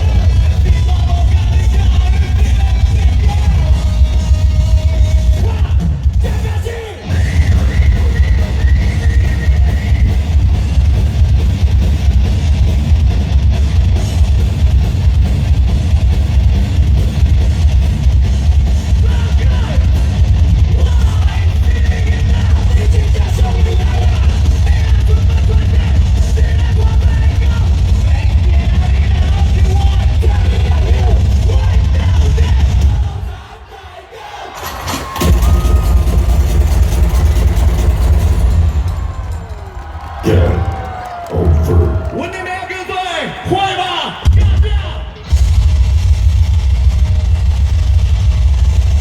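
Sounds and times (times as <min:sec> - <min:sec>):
heavy metal band playing: 0:00.0 - 0:33.6, 0:34.4 - 0:49.0
pounding drum kit: 0:00.0 - 0:49.0
yelled vocals: 0:18.9 - 0:35.9, 0:38.8 - 0:45.2.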